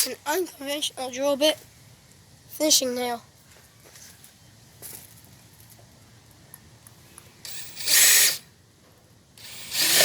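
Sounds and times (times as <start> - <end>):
power drill boring into wood: 7.5 - 8.4, 9.4 - 10.0.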